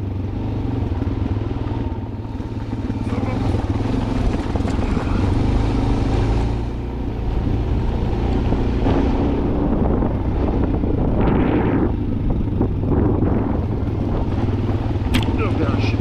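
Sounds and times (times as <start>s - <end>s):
low rumble: 1.3s - 15.8s
wind noise on microphone: 7.3s - 15.3s.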